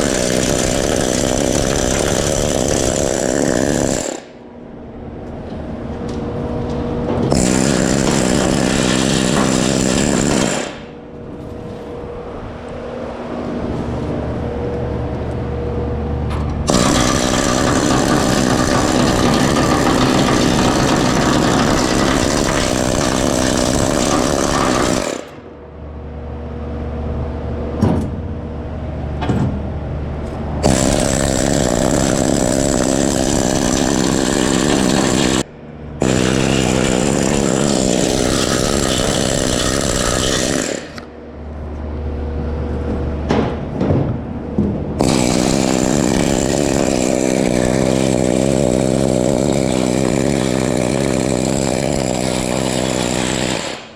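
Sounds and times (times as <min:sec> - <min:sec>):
low hum: 0:00.0 - 0:53.8
needle scaler chattering on steel: 0:16.7 - 0:25.4.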